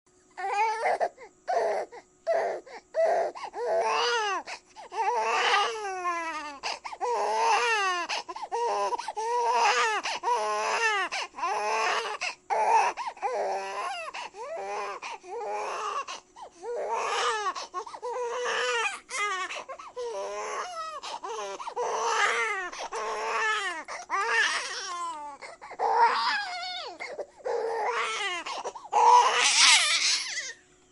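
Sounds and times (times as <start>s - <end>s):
baby crying: 0.4s - 30.6s.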